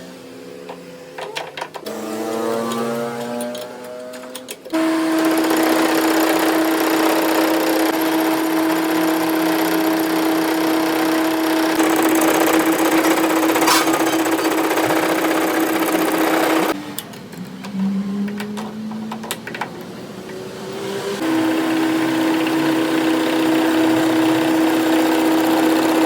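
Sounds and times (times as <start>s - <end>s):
power tool humming and hissing: 1.8s - 4.0s, 4.7s - 16.8s, 20.7s - 26.0s.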